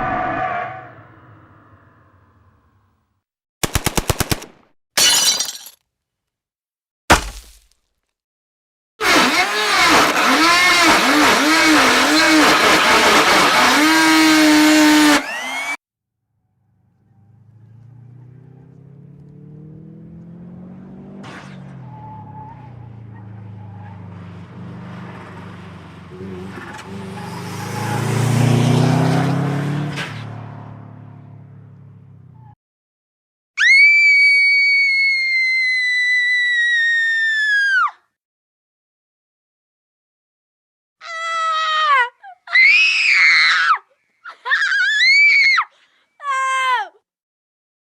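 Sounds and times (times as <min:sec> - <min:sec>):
engine revving: 0:00.0 - 0:02.3, 0:09.0 - 0:15.8, 0:16.7 - 0:32.4.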